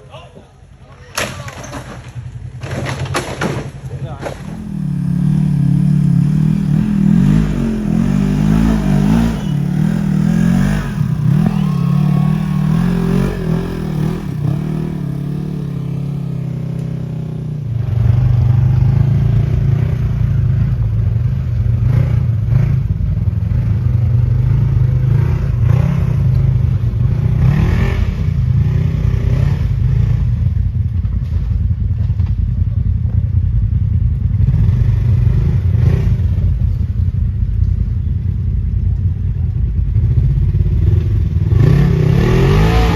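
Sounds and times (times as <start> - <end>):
utility vehicle engine running: 4.1 - 28.6.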